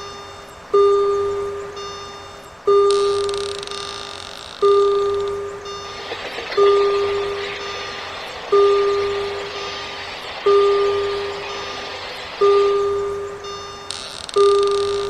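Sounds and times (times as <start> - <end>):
railroad crossing bell ringing: 1.0 - 4.0, 4.7 - 15.0
steady rushing noise: 5.7 - 14.5.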